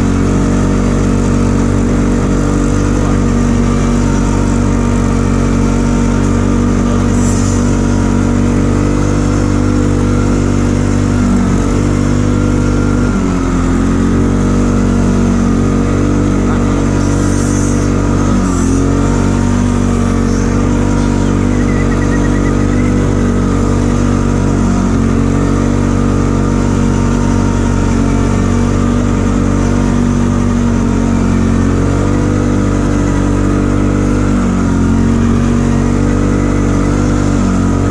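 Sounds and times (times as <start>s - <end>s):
atv engine running: 0.0s - 37.9s.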